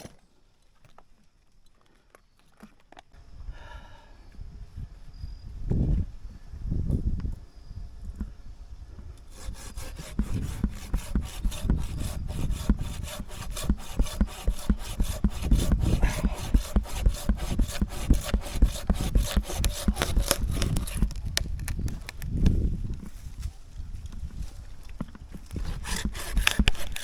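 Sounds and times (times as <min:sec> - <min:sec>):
pruning saw cutting wood: 0:09.1 - 0:21.8, 0:25.1 - 0:27.0.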